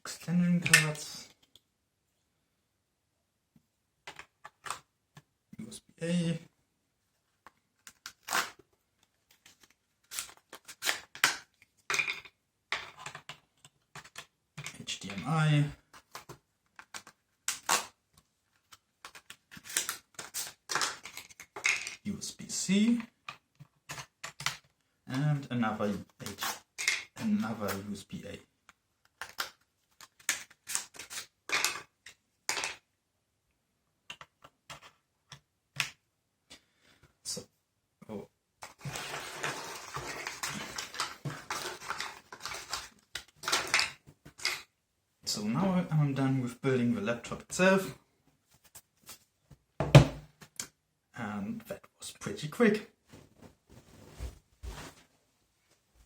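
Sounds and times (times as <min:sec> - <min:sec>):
scrapes and clicks of handled cards: 0:07.4 - 0:11.8, 0:15.8 - 0:22.0, 0:28.6 - 0:32.8, 0:38.6 - 0:44.7.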